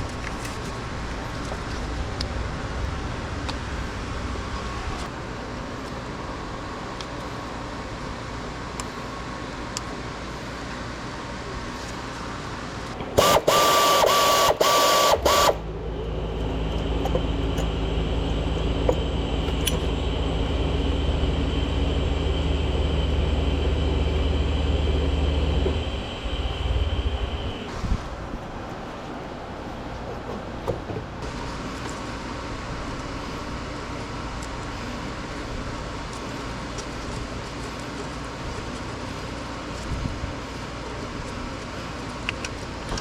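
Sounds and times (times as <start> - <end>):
car engine idling: 13.2 - 27.7
starter motor whine and crank: 13.2 - 27.7.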